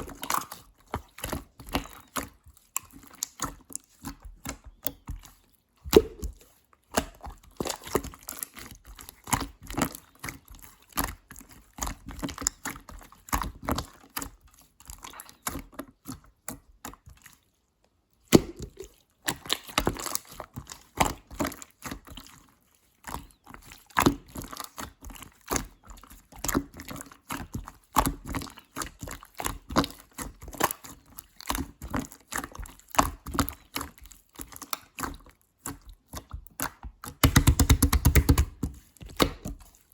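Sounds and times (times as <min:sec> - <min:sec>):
slime squished by hand: 0:05.2 - 0:09.8, 0:18.2 - 0:21.9, 0:34.5 - 0:39.8.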